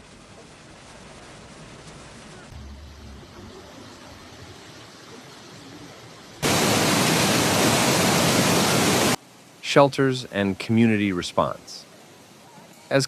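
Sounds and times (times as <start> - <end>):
loud rushing hiss: 6.4 - 9.2.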